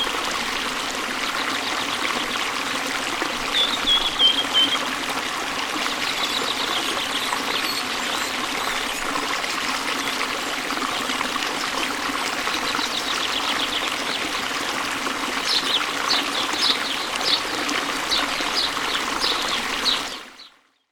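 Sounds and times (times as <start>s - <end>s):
stream trickling and splashing: 0.0s - 20.7s
birds chirping: 3.5s - 4.9s, 6.0s - 9.1s, 15.5s - 20.5s.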